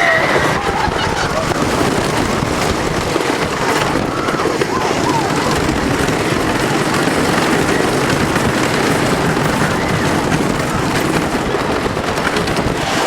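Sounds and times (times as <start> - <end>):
roller coaster clattering on track: 0.0 - 13.0
wind on microphone: 0.0 - 13.0.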